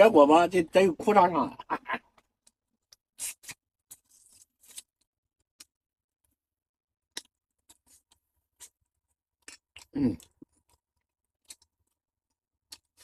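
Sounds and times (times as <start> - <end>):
chewing and mouth smacks: 7.1 - 13.0.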